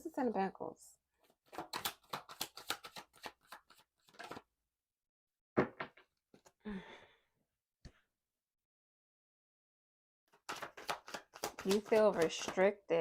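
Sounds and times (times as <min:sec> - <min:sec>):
card rustle: 0:01.4 - 0:04.5, 0:10.4 - 0:12.7
cards being shuffled: 0:01.4 - 0:04.5, 0:10.3 - 0:12.8.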